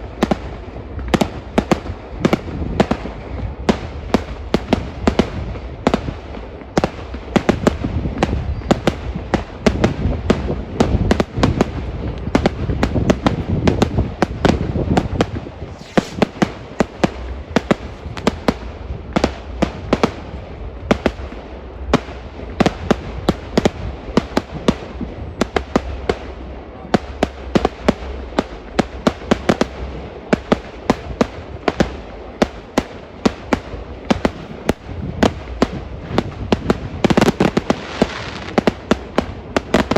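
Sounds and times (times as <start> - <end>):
fireworks bangs and cracks: 0.0 - 39.9
heavy low rumble: 6.4 - 29.0.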